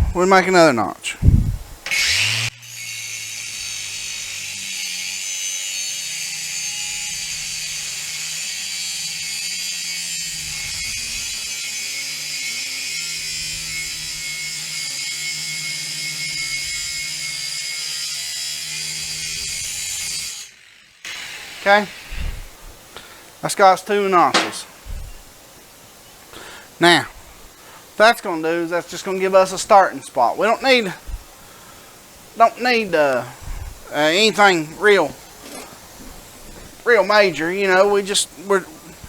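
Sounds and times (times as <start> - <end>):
power tool cutting metal: 1.8 - 22.2, 23.7 - 25.2.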